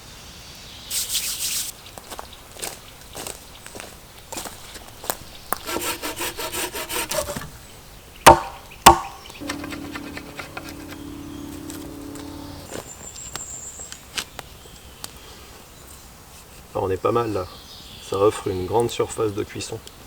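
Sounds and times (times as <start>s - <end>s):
saw cutting wood: 5.5s - 7.5s, 8.3s - 12.7s
sharp wooden knocks: 8.3s - 12.6s
steady low buzz: 9.4s - 12.7s.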